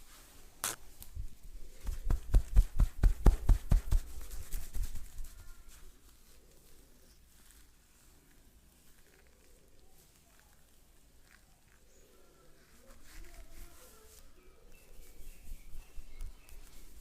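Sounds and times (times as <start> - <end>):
hands slapping rhythmically: 1.8 - 4.2.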